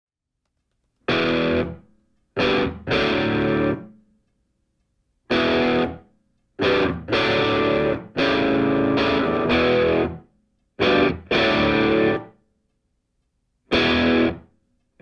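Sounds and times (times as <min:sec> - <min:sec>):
distorted electric guitar chords: 0:01.1 - 0:01.8, 0:02.4 - 0:03.9, 0:05.3 - 0:06.0, 0:06.6 - 0:10.2, 0:10.8 - 0:12.3, 0:13.7 - 0:14.4.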